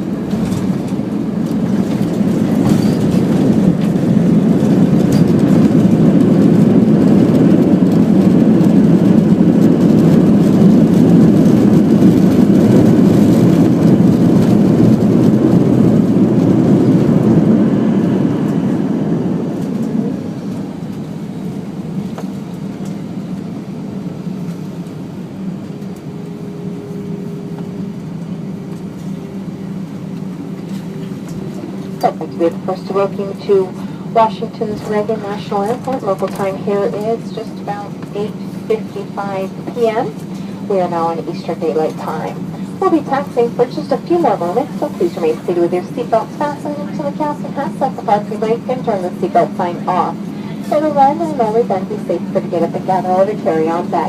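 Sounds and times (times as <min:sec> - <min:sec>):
jet engines and rushing air roar: 0:00.0 - 0:54.0
steady cabin hum: 0:00.0 - 0:54.0
faint steady whine: 0:16.5 - 0:54.0.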